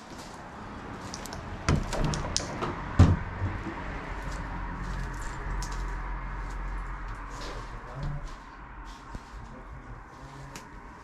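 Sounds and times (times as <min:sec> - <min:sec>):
knocks: 0:01.7 - 0:03.8.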